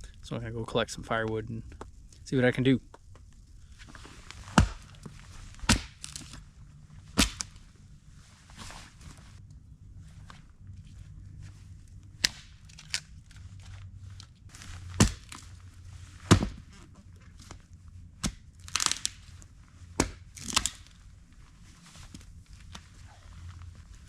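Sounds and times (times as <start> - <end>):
sticks snapping by hand: 5.6 - 6.4, 7.2 - 7.6, 12.2 - 13.1, 15.0 - 15.4, 18.2 - 19.2, 20.0 - 21.0
wood splintering crackles: 18.2 - 19.2, 20.4 - 20.9.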